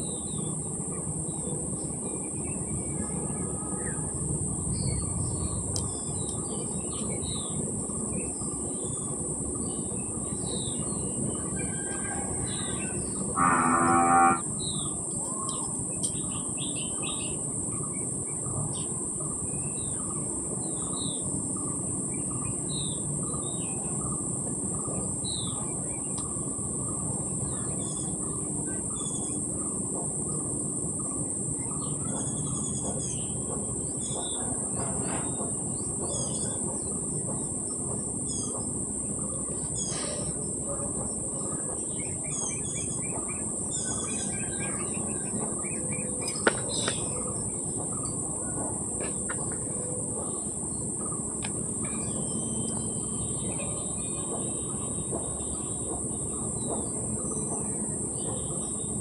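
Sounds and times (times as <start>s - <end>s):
low drawn-out animal call: 11.7s - 14.5s
high insect drone: 12.6s - 19.8s
birds chirping: 12.8s - 18.9s, 30.3s - 59.0s.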